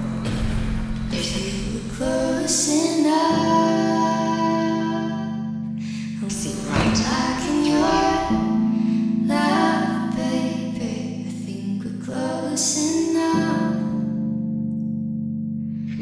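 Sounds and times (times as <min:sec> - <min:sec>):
person singing slow song: 0:01.1 - 0:14.4.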